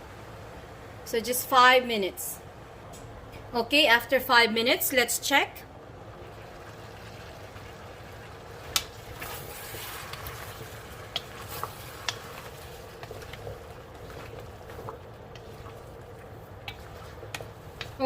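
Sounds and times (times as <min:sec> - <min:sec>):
pot bubbling: 0:05.2 - 0:18.0.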